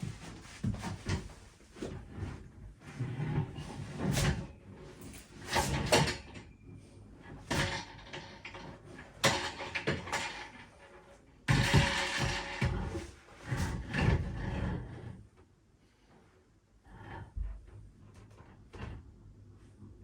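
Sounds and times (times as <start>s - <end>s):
objects scraping: 0.0s - 15.2s
objects knocking and clunking: 7.2s - 14.8s.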